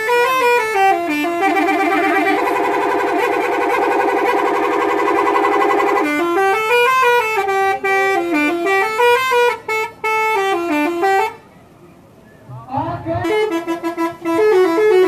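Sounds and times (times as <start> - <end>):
musical bus horn melody: 0.0 - 11.6, 12.9 - 15.0.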